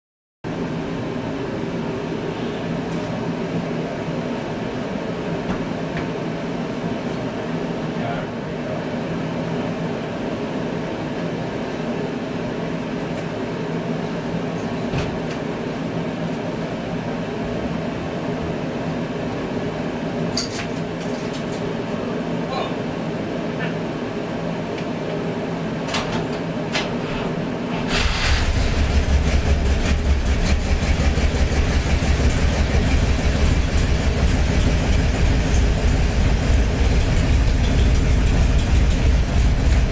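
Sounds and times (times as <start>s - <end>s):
car engine idling: 27.8s - 39.9s.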